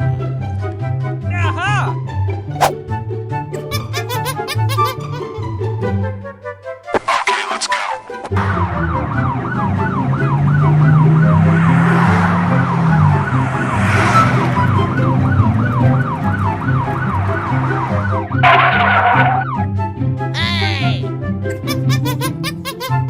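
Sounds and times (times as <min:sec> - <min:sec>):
fast wailing siren: 0:08.4 - 0:19.6.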